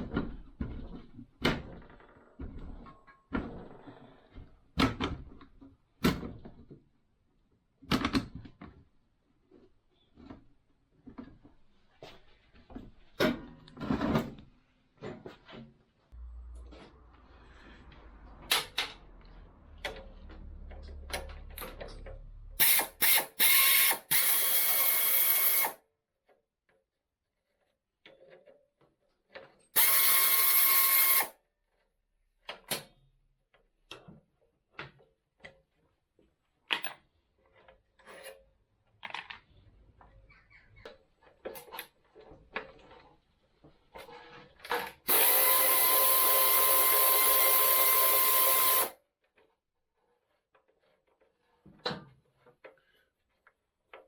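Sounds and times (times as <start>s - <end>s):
power drill whining: 22.6s - 25.8s, 29.8s - 31.3s, 45.1s - 49.0s.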